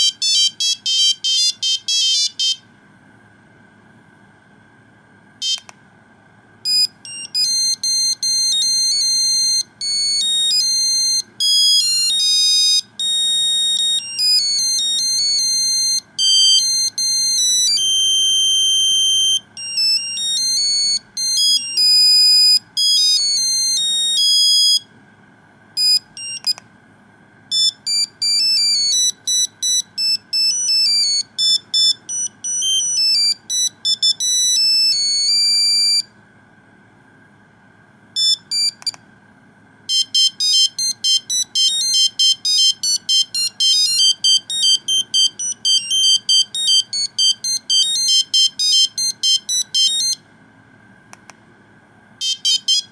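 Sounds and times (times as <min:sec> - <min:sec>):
monophonic ringtone melody: 0:00.0 - 0:02.6, 0:06.7 - 0:24.8, 0:27.5 - 0:36.0, 0:39.9 - 0:50.2, 0:52.2 - 0:52.9.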